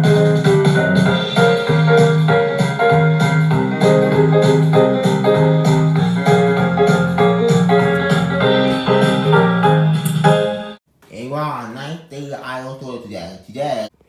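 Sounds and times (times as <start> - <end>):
instrumental keyboard music with beat: 0.0 - 10.8.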